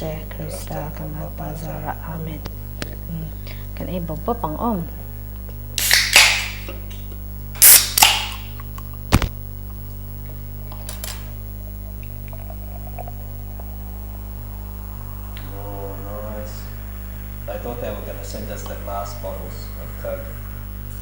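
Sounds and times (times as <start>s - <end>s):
steady low hum: 0.0s - 21.0s
bottle cap gas hissing: 5.8s - 6.7s, 7.6s - 9.4s
sharp click: 5.8s - 7.0s, 7.6s - 9.3s.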